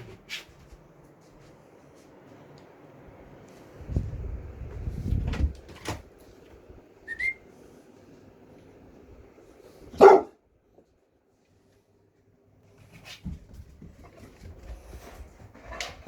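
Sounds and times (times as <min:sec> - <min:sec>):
dog barking: 0:10.0 - 0:10.4.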